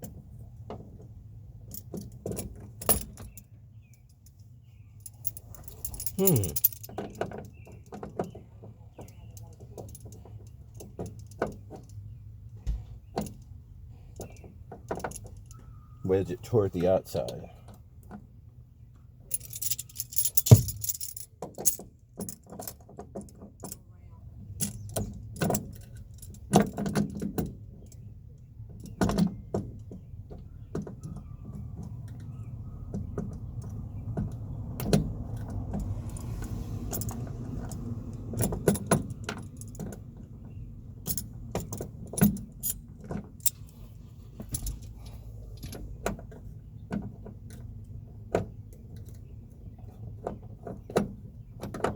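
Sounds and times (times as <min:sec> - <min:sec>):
metal tools clinking and rattling: 0:05.0 - 0:07.8, 0:19.3 - 0:22.8, 0:35.8 - 0:40.0, 0:41.0 - 0:45.8.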